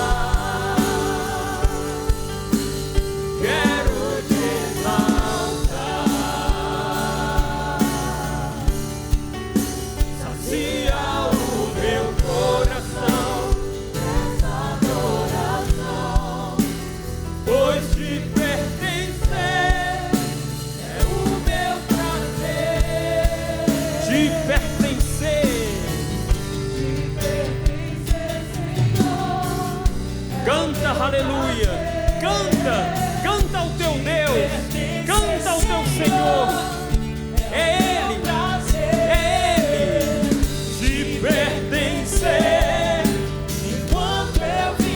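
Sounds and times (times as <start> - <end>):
band accompaniment with beat: 0.0 - 44.9
voices singing worship song: 0.0 - 44.9.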